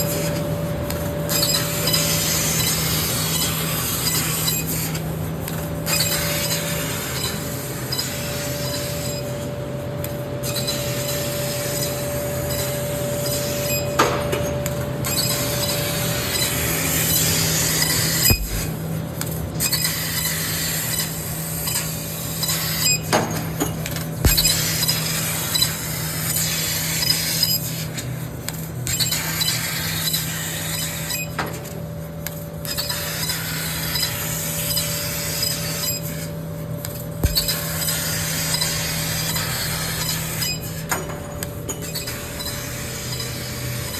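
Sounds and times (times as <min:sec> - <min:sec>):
sharp knocks: 0:18.3 - 0:18.7, 0:24.3 - 0:24.7, 0:37.2 - 0:37.8.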